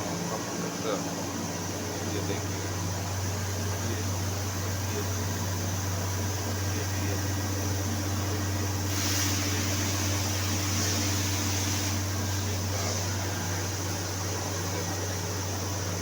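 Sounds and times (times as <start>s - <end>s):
compressor and fans humming: 0.0s - 16.0s
loud hiss: 4.6s - 16.0s.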